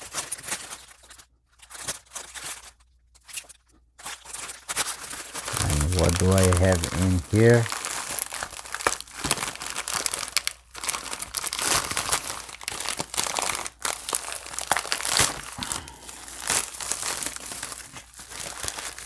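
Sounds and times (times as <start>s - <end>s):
packaging crinkling and rustling: 7.5s - 15.6s, 16.2s - 19.0s.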